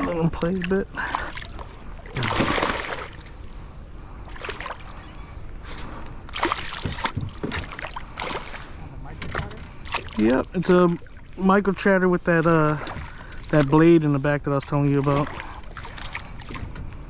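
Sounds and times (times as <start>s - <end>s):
fish splashing at water surface: 0.0s - 3.5s, 4.3s - 5.0s, 6.3s - 8.7s.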